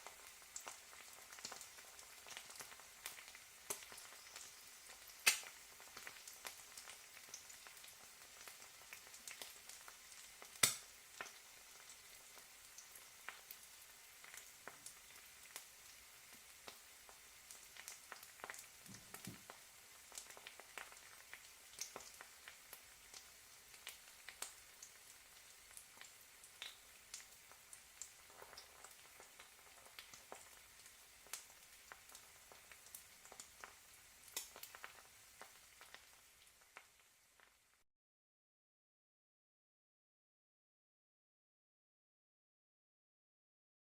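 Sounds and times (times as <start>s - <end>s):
fat crackling and popping: 0.0s - 15.6s, 16.6s - 23.2s, 31.2s - 37.1s
egg sizzling in a pan: 0.0s - 37.8s.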